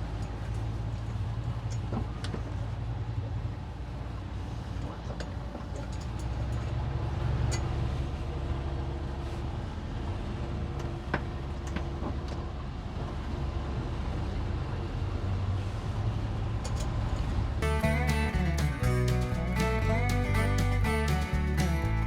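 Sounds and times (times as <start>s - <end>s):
boat engine running at low speed: 17.4s - 22.0s.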